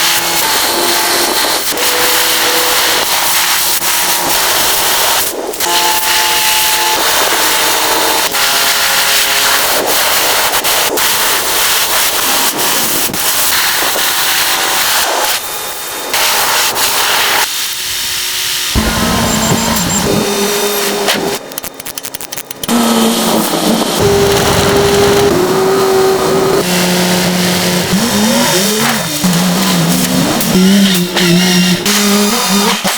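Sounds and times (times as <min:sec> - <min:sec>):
whining power tools: 0:00.0 - 0:03.4, 0:14.6 - 0:21.6, 0:22.6 - 0:32.9
hissing and scraping workshop noise: 0:00.0 - 0:32.9.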